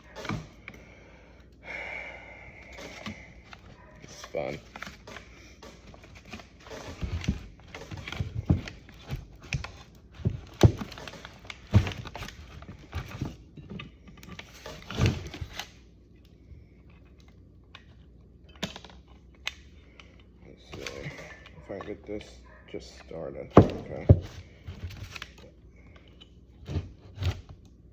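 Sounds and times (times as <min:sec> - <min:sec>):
clicks and knocks of hand work: 0:23.0 - 0:27.8.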